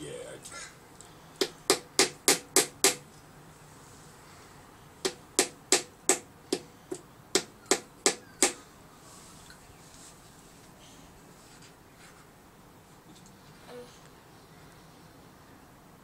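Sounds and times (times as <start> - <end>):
hammer striking nail into wood: 1.4 - 3.0, 5.0 - 8.6.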